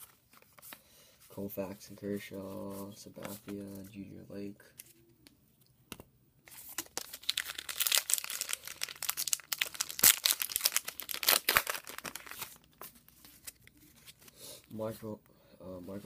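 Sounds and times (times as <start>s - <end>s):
card pack wrapper tearing and crinkling: 6.5s - 14.3s.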